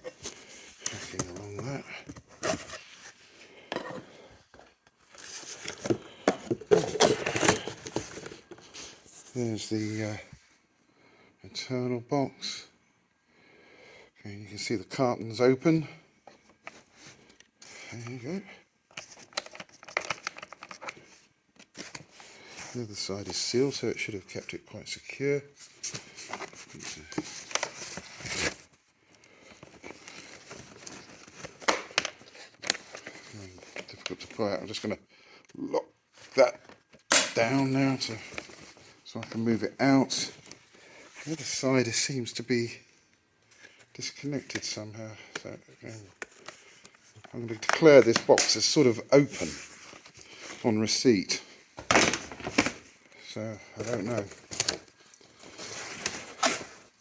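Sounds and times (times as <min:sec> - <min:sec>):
cardboard rustling and scraping: 0:00.0 - 0:09.4, 0:25.6 - 0:28.8.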